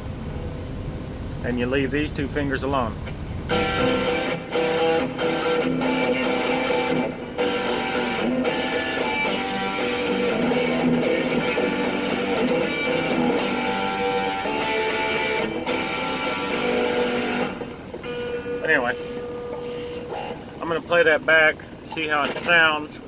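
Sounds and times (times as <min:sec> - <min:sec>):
distorted electric guitar chords: 0:03.5 - 0:20.6.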